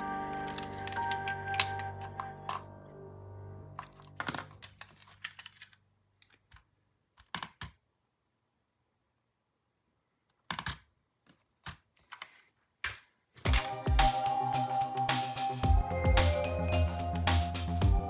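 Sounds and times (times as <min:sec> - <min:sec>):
clicks of plastic parts: 0:00.4 - 0:02.6, 0:03.8 - 0:07.8, 0:10.3 - 0:13.8.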